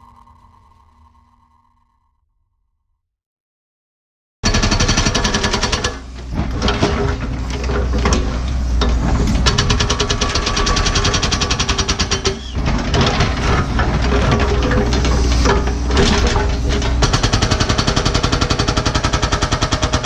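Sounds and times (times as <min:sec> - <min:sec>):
hydraulic breaker pounding rock: 0:04.4 - 0:20.0
diesel engine running: 0:06.1 - 0:17.1.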